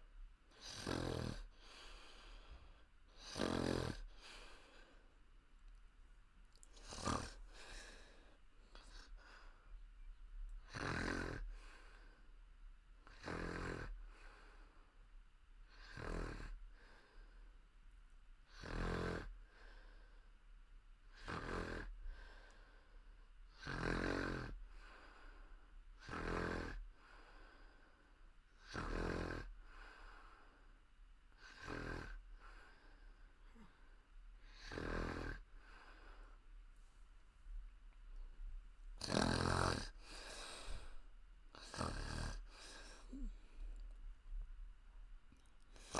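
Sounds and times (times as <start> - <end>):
soft breaths: 0.5 - 5.9, 6.5 - 10.6, 11.4 - 12.6, 13.9 - 15.2, 19.4 - 20.6, 21.9 - 23.5, 24.6 - 26.0, 26.8 - 28.6, 29.4 - 45.9
woman snoring: 0.6 - 1.7, 3.2 - 4.4, 6.8 - 8.0, 10.7 - 11.5, 13.1 - 14.0, 15.7 - 16.6, 18.5 - 19.4, 21.1 - 21.9, 23.6 - 24.6, 26.0 - 26.9, 28.6 - 29.6, 31.4 - 32.2, 34.4 - 35.5, 39.0 - 41.0, 41.6 - 43.5.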